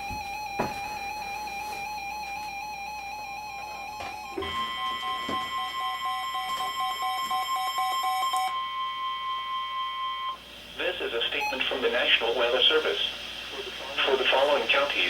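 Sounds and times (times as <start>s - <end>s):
steady alarm tone: 0.0s - 15.0s
receiver alert beeps: 3.4s - 10.4s, 11.0s - 12.4s.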